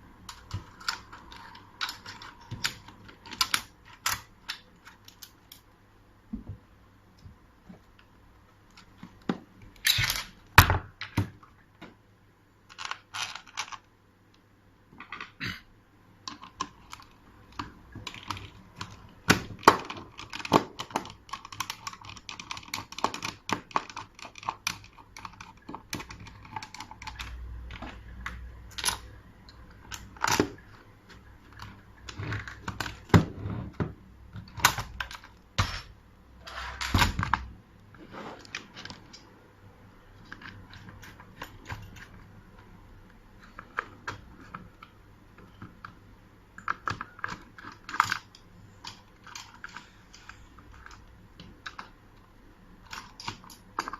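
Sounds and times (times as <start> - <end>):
metal lock parts clicking: 0.3 - 5.6, 18.1 - 30.6, 52.8 - 53.9.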